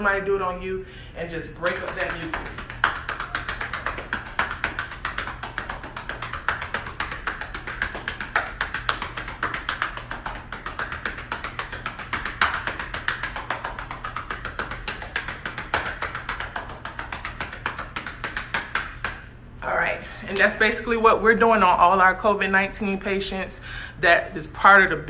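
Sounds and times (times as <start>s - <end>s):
hands patting on back: 1.6s - 19.3s.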